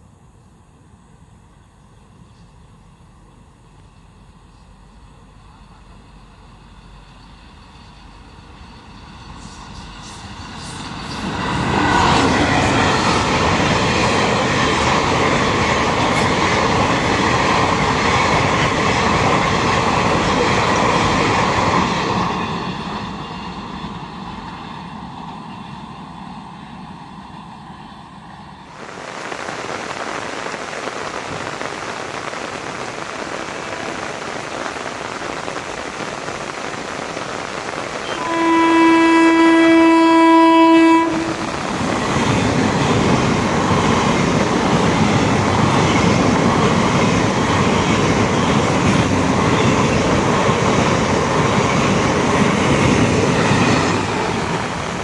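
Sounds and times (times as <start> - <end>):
steady rail rumble: 0.0 - 55.0
train wheels clattering on rails: 41.1 - 55.0.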